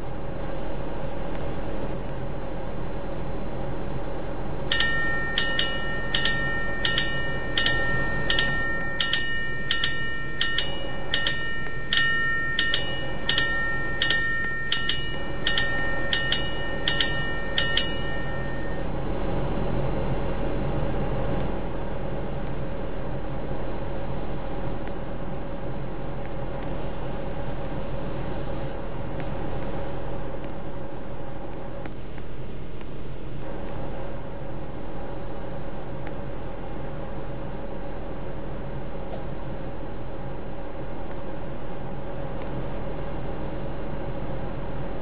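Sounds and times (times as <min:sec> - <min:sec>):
air conditioner hum: 0:00.0 - 0:45.0
metal chimes ringing: 0:04.7 - 0:18.9.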